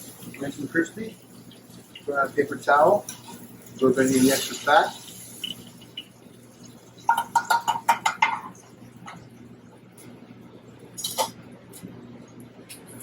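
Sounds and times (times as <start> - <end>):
utensils tapping dishes: 7.0 - 9.2, 11.0 - 11.4.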